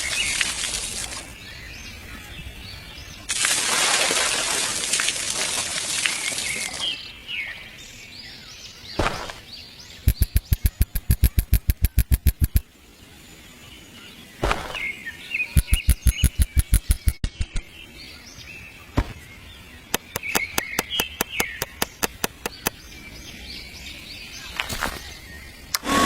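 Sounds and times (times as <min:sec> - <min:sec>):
small birds chirping: 0:00.0 - 0:03.3, 0:06.0 - 0:26.0
sharp even clicks: 0:10.0 - 0:12.7, 0:15.6 - 0:17.7, 0:19.9 - 0:22.8
single knocks: 0:19.0 - 0:19.2.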